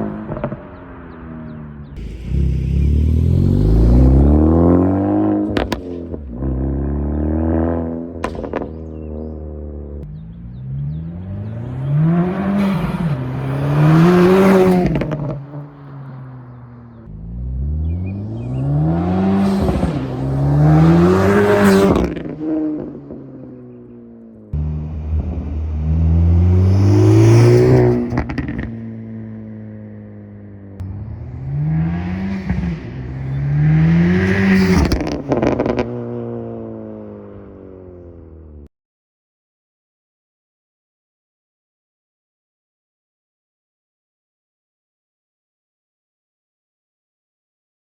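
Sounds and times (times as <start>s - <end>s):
car engine revving: 0.0s - 23.7s, 24.6s - 30.0s, 30.6s - 38.1s
exhaust crackling: 1.9s - 6.6s.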